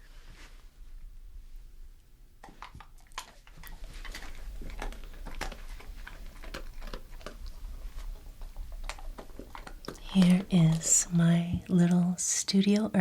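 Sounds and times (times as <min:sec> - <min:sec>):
dog crunching and chewing: 0:02.4 - 0:12.0.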